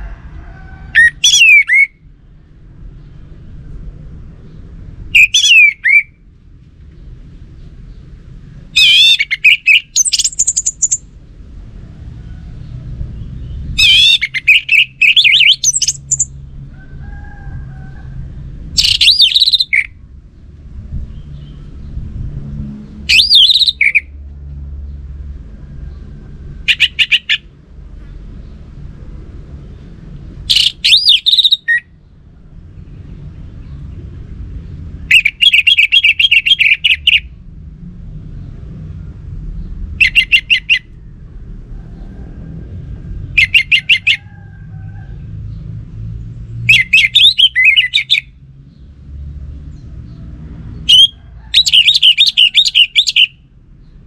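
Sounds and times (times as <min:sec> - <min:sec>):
low background hum: 0:00.0 - 0:49.0
thrush singing: 0:08.8 - 0:11.1, 0:13.8 - 0:16.3, 0:26.6 - 0:27.5.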